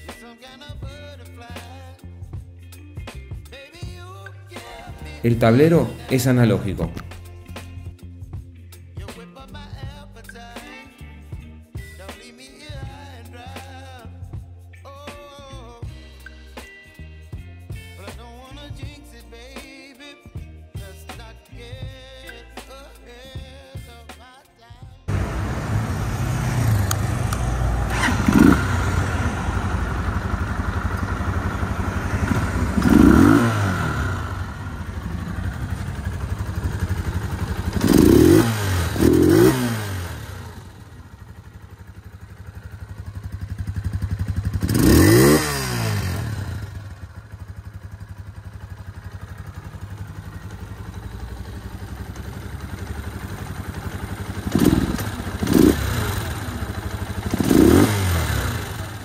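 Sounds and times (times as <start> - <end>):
motorcycle engine idling: 25.1 - 59.0.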